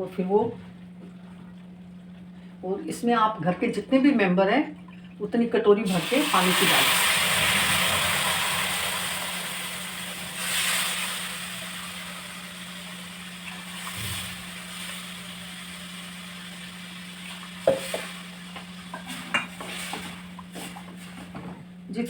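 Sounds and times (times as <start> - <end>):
water sizzling in a hot pan: 5.9 - 21.1.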